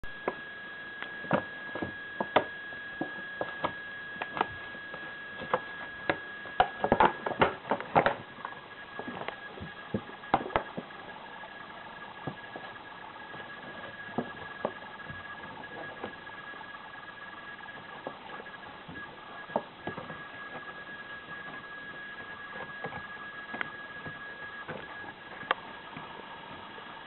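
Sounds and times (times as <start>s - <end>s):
faint high-pitched whine: 0.0s - 27.0s.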